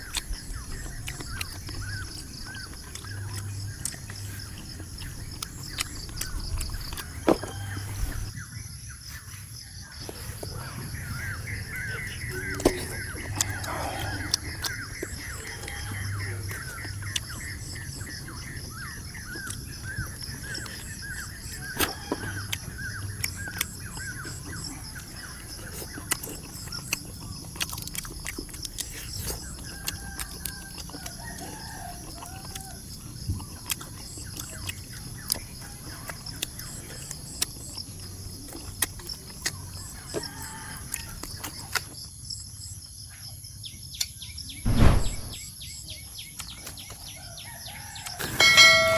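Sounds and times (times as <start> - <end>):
rooster crowing: 7.1 - 8.4, 29.8 - 32.8, 40.1 - 41.2, 47.3 - 48.9.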